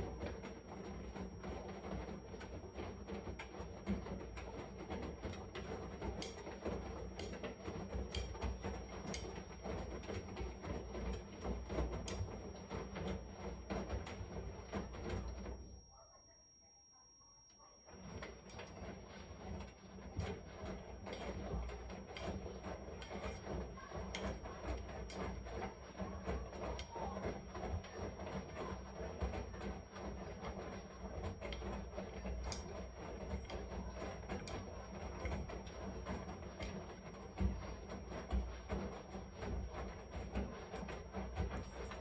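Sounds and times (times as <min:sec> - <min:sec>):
washing machine clicks and knocks: 0:05.0 - 0:10.2
washing machine drum rumbling: 0:18.0 - 0:42.0.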